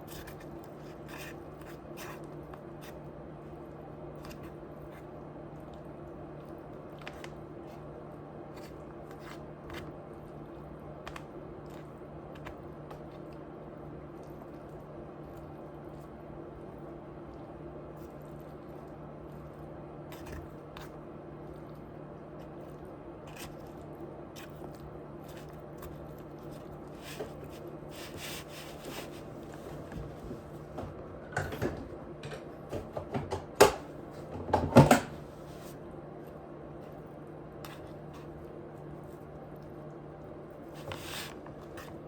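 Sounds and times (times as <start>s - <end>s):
person chewing food: 20.4s - 28.2s.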